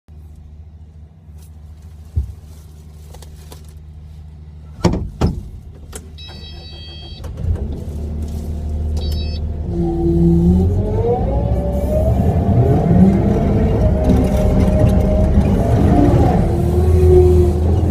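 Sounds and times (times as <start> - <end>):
diesel engine running: 0.1 - 17.9
sharp clunks: 4.8 - 6.0
high electronic warning beeps: 6.2 - 7.2, 9.0 - 9.4.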